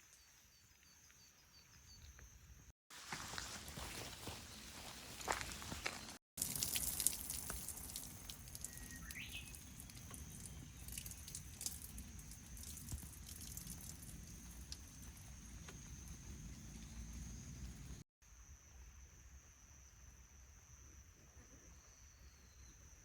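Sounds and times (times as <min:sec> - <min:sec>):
raindrops dripping and pattering: 0:06.4 - 0:18.0.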